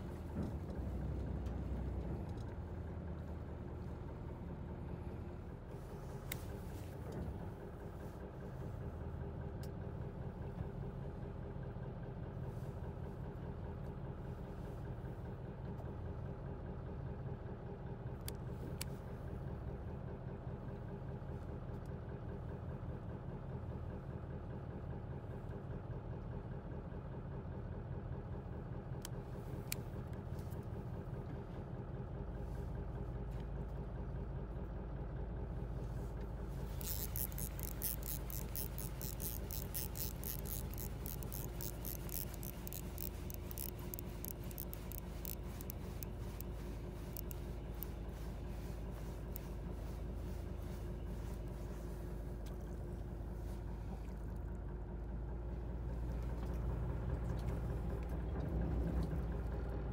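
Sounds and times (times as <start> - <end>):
boat engine running: 0.0 - 11.9, 35.4 - 59.9
sharp clicks: 36.8 - 48.0.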